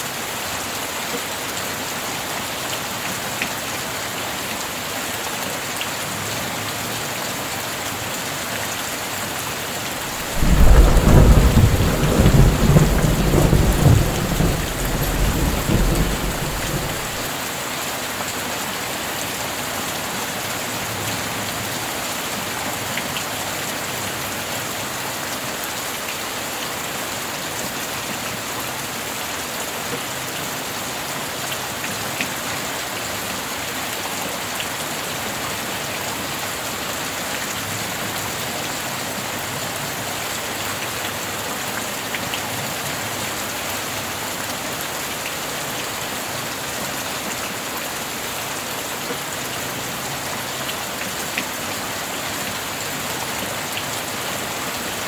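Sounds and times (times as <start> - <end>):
heavy rain: 0.0 - 55.0
thunder rumble: 10.1 - 17.3.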